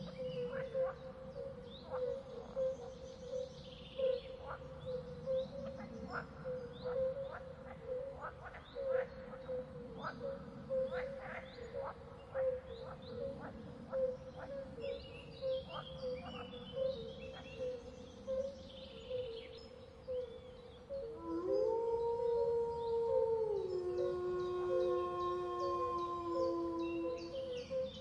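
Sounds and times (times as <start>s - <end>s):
wolf howling: 21.0s - 27.9s.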